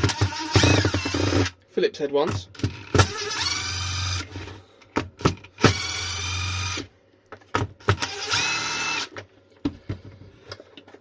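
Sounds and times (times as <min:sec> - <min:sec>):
cordless drill whining: 0:00.0 - 0:01.5, 0:02.8 - 0:04.4, 0:05.6 - 0:06.9, 0:07.9 - 0:09.1.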